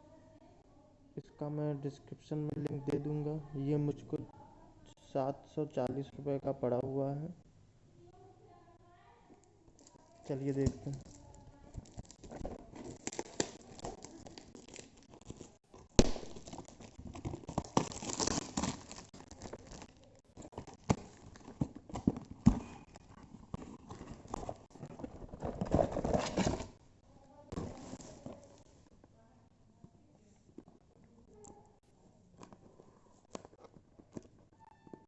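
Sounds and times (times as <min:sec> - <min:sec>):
plastic packaging crinkling and tearing: 0:09.8 - 0:26.8.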